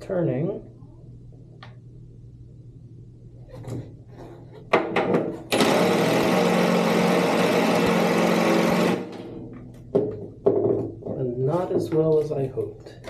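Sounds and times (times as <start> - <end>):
impact driver hammering: 4.7 - 10.6.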